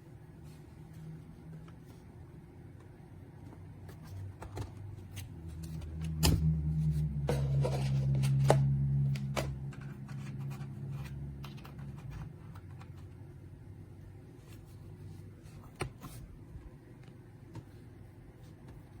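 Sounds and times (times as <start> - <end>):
low hum: 4.0 - 14.2.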